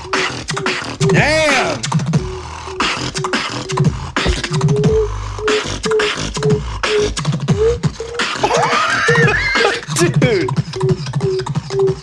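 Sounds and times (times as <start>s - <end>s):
beatbox kick and snare: 0.0s - 12.0s
low bass: 3.8s - 5.8s.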